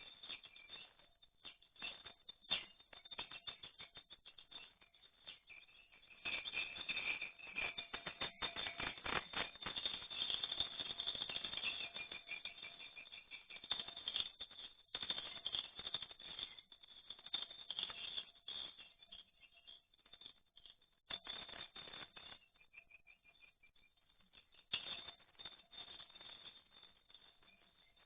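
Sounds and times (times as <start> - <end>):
bird chirps: 11.5 - 14.0, 18.7 - 19.9, 22.2 - 25.1.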